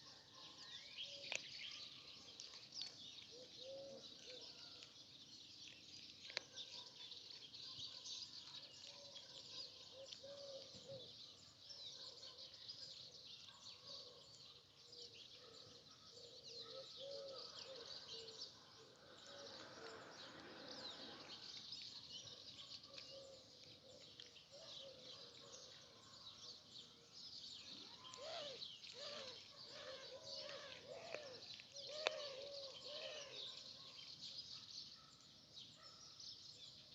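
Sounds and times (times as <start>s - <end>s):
small birds chirping: 0.0s - 36.9s
low cooing calls: 3.3s - 4.8s, 28.0s - 33.5s.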